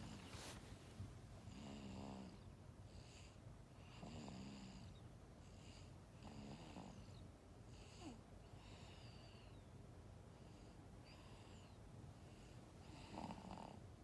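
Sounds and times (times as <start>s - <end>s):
faint snoring with whistle: 12.8s - 13.8s.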